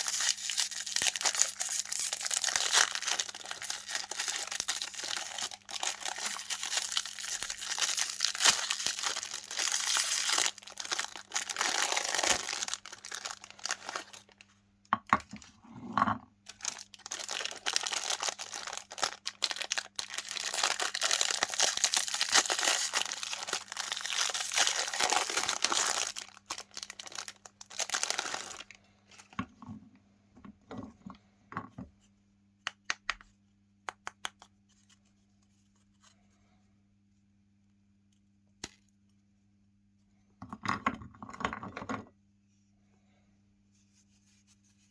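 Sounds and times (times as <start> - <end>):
cookies crunching in grinder: 0.0 - 14.4, 16.5 - 28.8.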